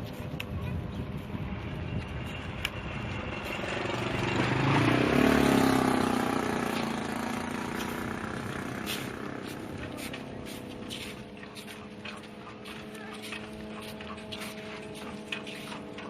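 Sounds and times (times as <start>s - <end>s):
traffic noise: 0.0s - 16.0s
vehicle engine passing by: 1.5s - 16.0s.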